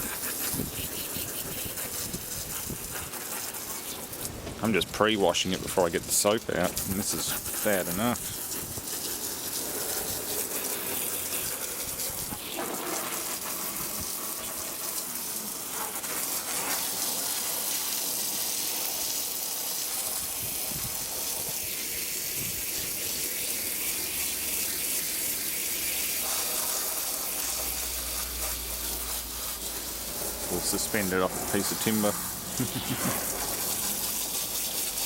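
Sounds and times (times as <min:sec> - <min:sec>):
water spraying on carpet: 0:00.0 - 0:35.0.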